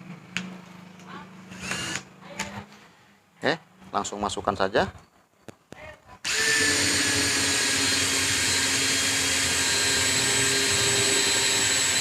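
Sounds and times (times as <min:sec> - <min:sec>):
cordless drill running: 0:01.5 - 0:02.1, 0:06.2 - 0:12.0.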